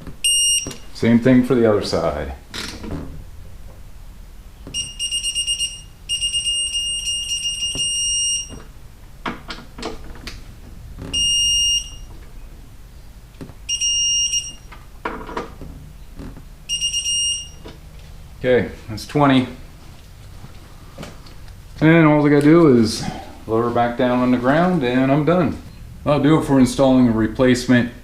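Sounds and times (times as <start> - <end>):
torque wrench beeping: 0.2 - 0.9, 4.7 - 8.6, 11.1 - 12.1, 13.7 - 14.7.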